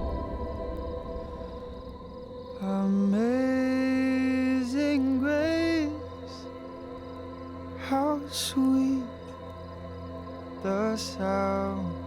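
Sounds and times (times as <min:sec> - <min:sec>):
soft instrumental music: 0:02.6 - 0:12.0.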